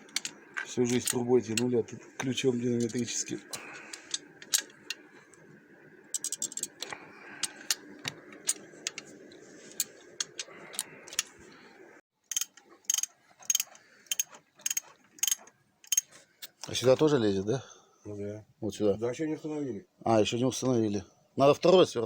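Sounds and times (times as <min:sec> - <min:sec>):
torque wrench ratchet clicking: 0:12.3 - 0:16.1.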